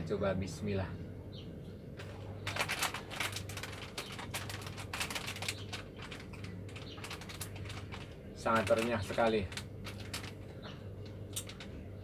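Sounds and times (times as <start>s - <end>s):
chewing crispy snacks: 2.4s - 11.7s.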